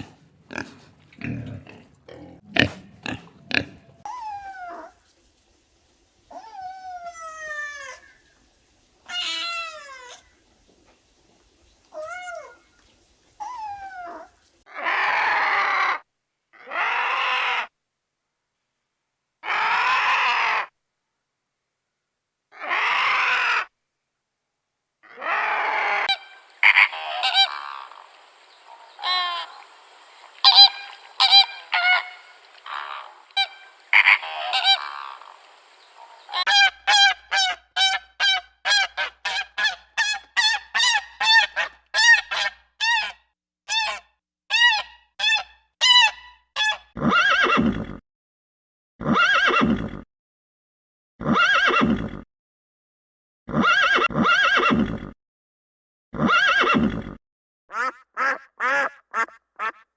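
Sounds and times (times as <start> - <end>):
long deep animal calls: 26.1 - 36.5
animal honking calls: 26.1 - 36.7.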